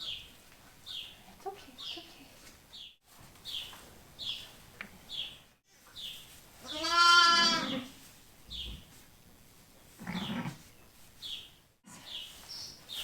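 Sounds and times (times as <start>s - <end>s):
sheep bleating: 6.7s - 7.9s, 10.0s - 10.6s.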